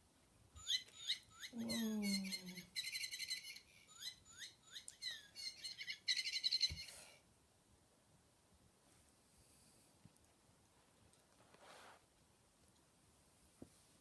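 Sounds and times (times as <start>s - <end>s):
toy bird chirping: 0.6s - 7.0s.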